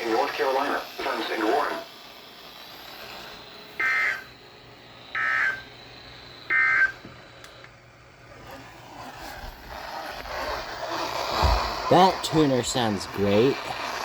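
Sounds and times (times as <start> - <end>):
two-tone digital data bursts: 3.8 - 4.3, 5.1 - 5.7, 6.5 - 7.0.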